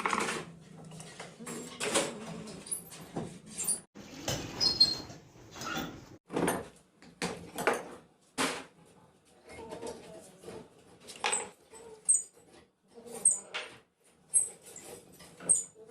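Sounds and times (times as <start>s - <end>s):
high squeak: 14.3s - 15.8s.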